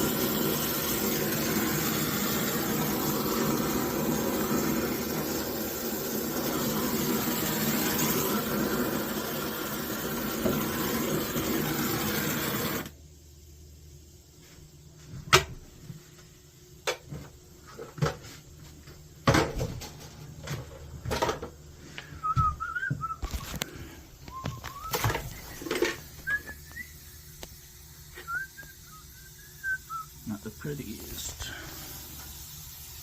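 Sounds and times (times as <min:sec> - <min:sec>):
knocks and clanks of work: 0:19.2 - 0:21.6
person whistling a tune: 0:22.0 - 0:23.6, 0:24.2 - 0:27.3, 0:28.1 - 0:30.2.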